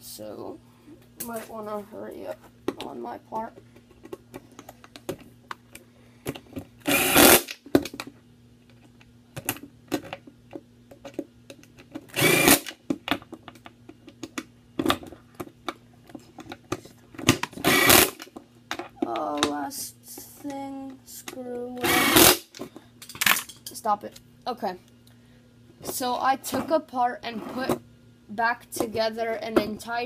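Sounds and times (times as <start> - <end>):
power drill driving bolts: 6.9 - 7.6, 12.1 - 12.8, 17.6 - 18.2, 21.8 - 22.4.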